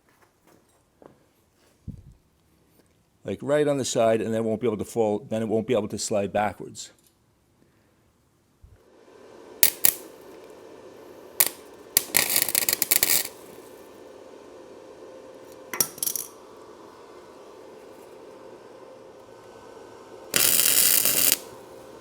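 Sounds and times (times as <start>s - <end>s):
steady hum: 8.7s - 22.0s
arc welding crackle: 9.6s - 14.1s, 15.4s - 16.4s, 20.2s - 22.0s.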